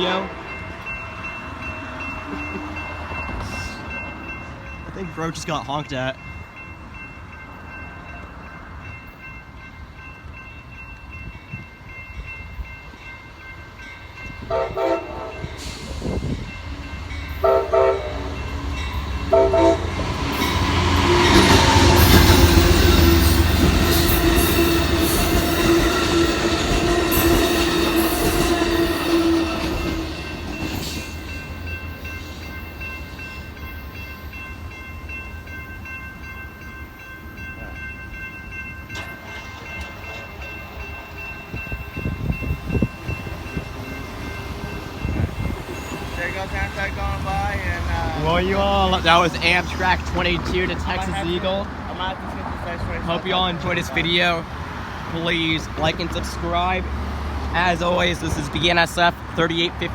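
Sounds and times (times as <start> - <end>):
train passing by: 0.0 - 59.9
train air horn blasts: 14.4 - 16.2, 17.3 - 18.4, 19.3 - 30.3.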